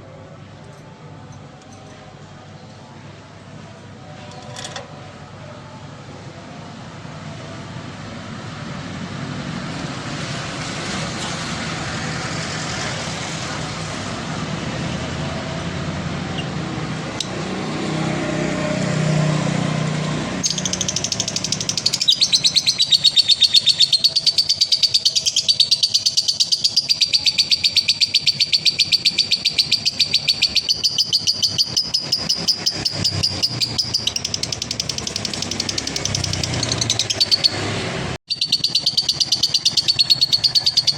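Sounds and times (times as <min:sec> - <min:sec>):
bird rapid trilling chatter: 0:20.4 - 0:37.7, 0:38.3 - 0:40.9.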